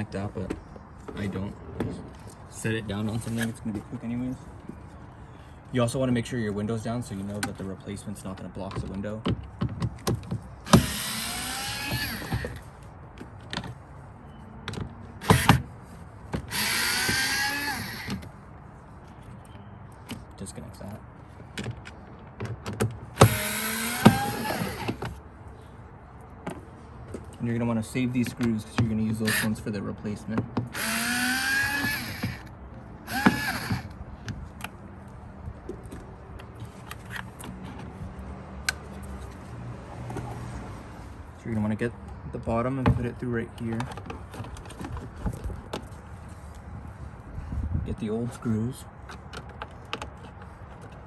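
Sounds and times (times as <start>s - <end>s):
power drill whining: 10.7s - 12.6s, 16.5s - 18.1s, 23.2s - 25.0s, 30.7s - 32.5s, 33.1s - 33.9s
small electric motor whirring: 10.7s - 12.6s, 16.5s - 18.2s, 23.2s - 25.0s, 30.7s - 32.5s, 33.1s - 33.9s.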